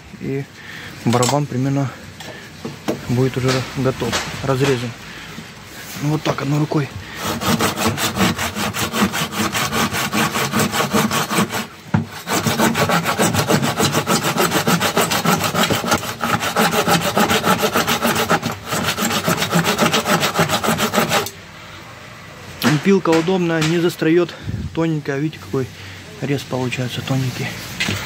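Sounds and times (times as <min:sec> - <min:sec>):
hand saw cutting metal: 0:07.1 - 0:21.4.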